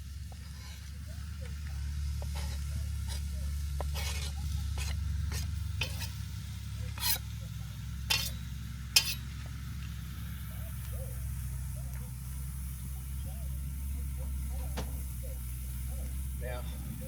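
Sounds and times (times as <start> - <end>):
steady low rumble: 0.0 - 17.0
utensil scraping a pot: 0.3 - 7.4, 8.0 - 9.3.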